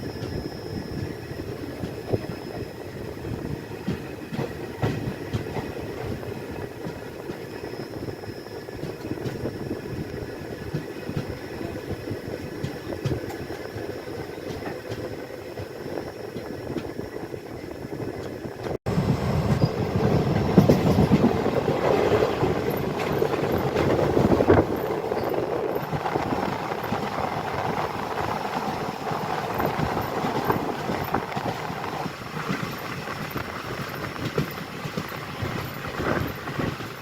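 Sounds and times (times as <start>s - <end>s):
train wheels rumbling on rails: 0.0s - 37.0s.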